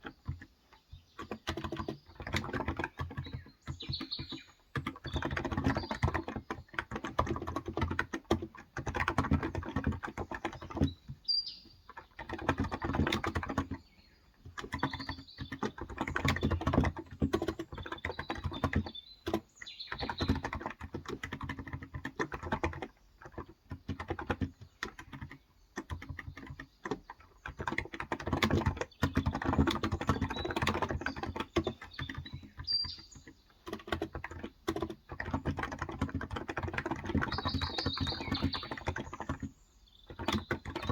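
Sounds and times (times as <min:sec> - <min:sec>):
typing on a keyboard: 0:00.0 - 0:40.9
faint bird chirps: 0:10.5 - 0:16.8, 0:29.0 - 0:33.6, 0:37.0 - 0:40.9.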